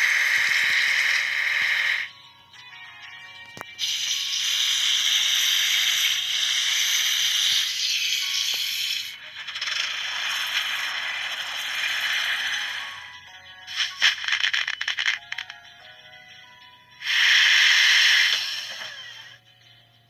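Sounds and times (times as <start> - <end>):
plastic toys rattling: 6.9 - 12.8, 13.7 - 15.7.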